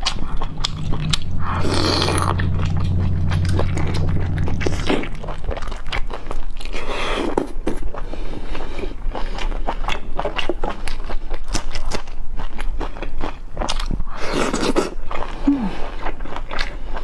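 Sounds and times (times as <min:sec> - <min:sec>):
chewing meat: 0:06.6 - 0:17.0.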